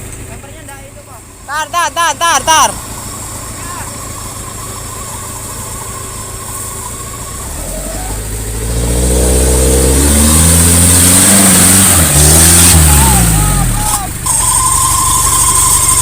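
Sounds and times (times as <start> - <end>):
off-road engine revving hard: 2.6 - 16.0.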